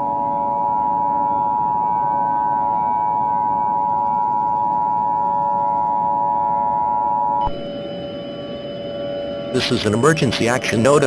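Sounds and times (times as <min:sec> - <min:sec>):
two-tone alert signal: 0:07.4 - 0:07.8.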